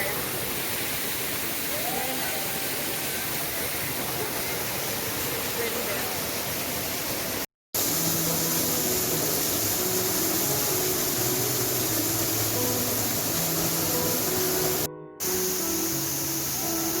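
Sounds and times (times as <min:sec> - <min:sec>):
waterfall rushing: 0:00.0 - 0:17.0
faint soft music: 0:07.8 - 0:17.0.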